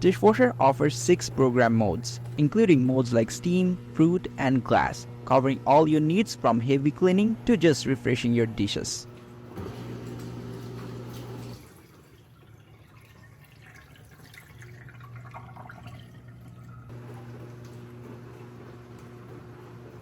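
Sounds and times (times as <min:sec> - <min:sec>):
dishwasher pump motor hum: 0:00.0 - 0:20.0
water splashing and dripping: 0:10.1 - 0:16.9.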